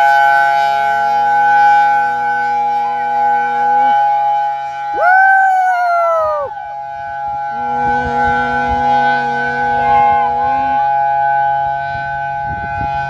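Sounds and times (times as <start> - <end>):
tornado warning sirens: 4.9 - 6.7.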